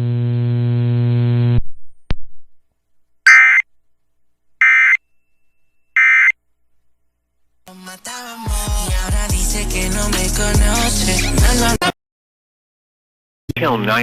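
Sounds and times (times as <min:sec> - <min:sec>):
warbling data burst tones: 0:03.3 - 0:03.6.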